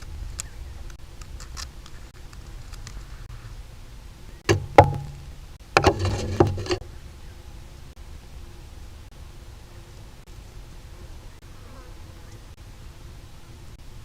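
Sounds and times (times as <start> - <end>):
low steady rumble: 0.0 - 11.4
beak knocking on camera: 4.5 - 6.8.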